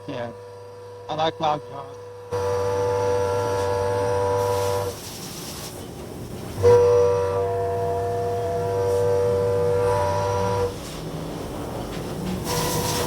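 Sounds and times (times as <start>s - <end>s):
milling machine cutting whine: 12.5s - 13.0s.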